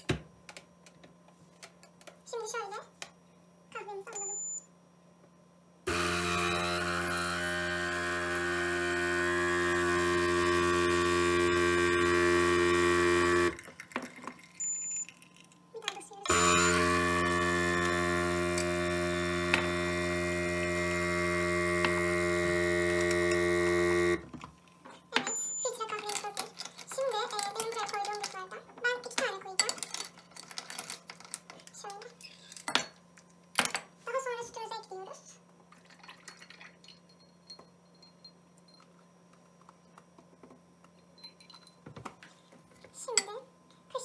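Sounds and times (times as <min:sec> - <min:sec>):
coffee machine pump humming: 0:05.9 - 0:25.0
milk pouring: 0:13.4 - 0:15.6.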